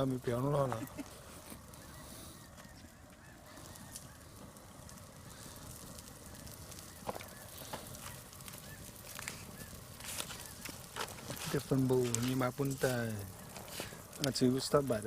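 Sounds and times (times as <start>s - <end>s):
outdoor background noise: 0.0s - 15.0s
faint bird calls: 0.5s - 11.0s.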